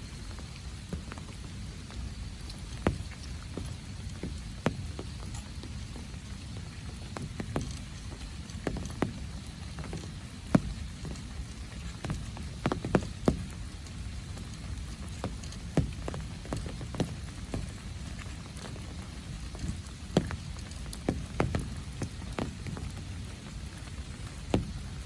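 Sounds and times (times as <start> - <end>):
rain falling: 0.0 - 25.0
raindrops striking close by: 0.0 - 25.0.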